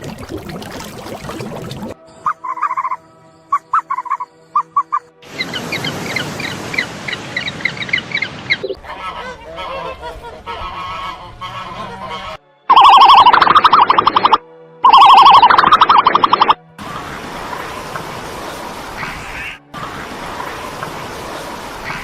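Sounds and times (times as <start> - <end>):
geese honking: 2.3 - 16.4.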